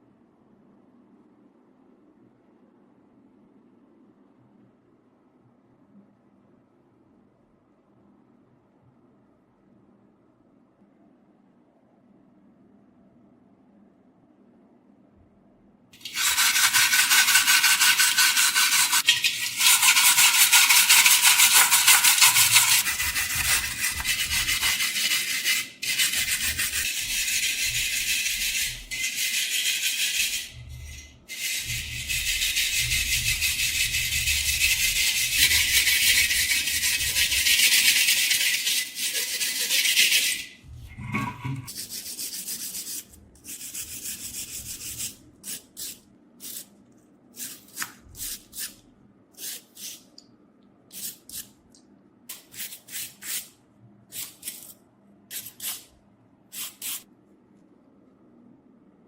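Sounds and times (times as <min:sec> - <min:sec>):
abrasive rubbing on rusty steel: 0:22.1 - 0:41.7
light scraping and handling: 0:40.7 - 0:41.7.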